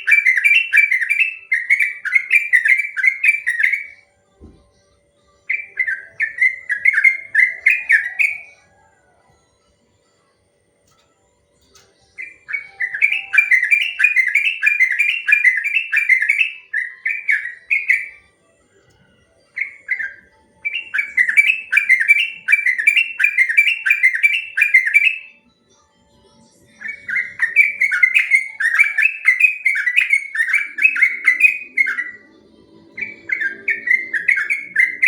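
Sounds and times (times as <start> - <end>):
bird singing rapid song: 0.0 - 4.0, 12.1 - 18.2, 19.6 - 25.3, 26.8 - 35.0.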